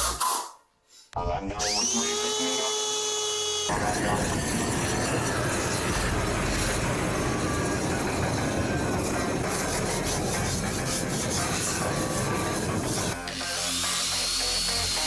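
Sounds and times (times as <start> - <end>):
power tool motor whine: 1.6 - 15.0
loud rough grinding: 3.7 - 15.0.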